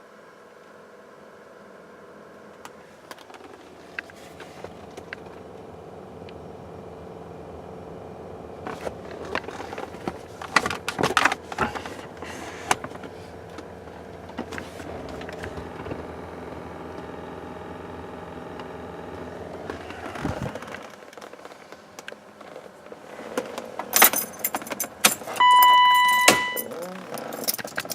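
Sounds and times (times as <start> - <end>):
car blower fan humming: 0.0 - 27.9
keys jangling: 23.9 - 27.9
electronic warning chime: 25.4 - 26.8.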